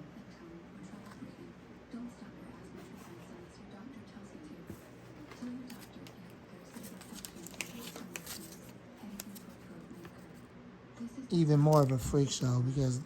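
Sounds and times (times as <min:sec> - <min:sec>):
paper and packaging rustling: 0:05.2 - 0:10.3.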